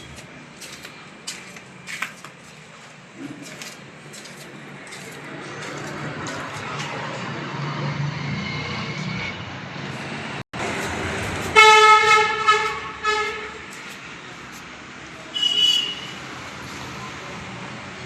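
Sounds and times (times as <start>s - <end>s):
vehicle horn honking: 11.5s - 13.7s, 15.3s - 16.2s.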